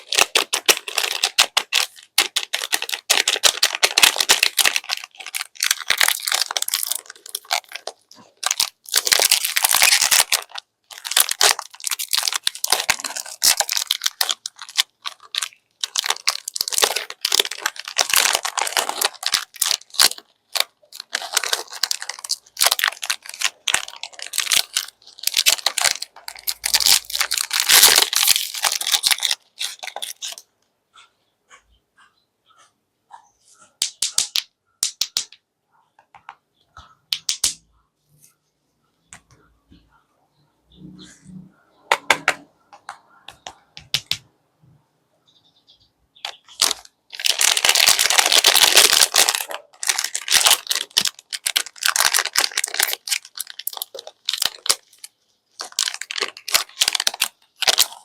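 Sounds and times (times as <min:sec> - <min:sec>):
candy wrappers crinkling: 0:00.0 - 0:30.4, 0:33.8 - 0:35.4, 0:46.2 - 0:58.0.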